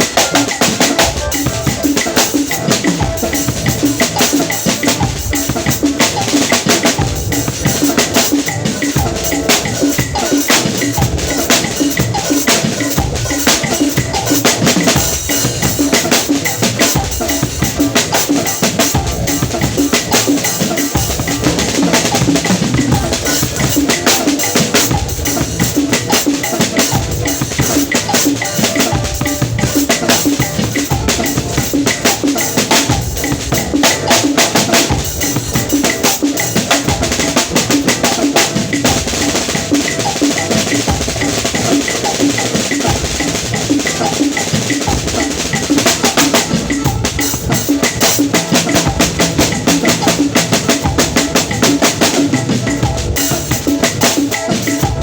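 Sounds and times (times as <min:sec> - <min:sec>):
drum kit playing: 0:00.0 - 0:55.0.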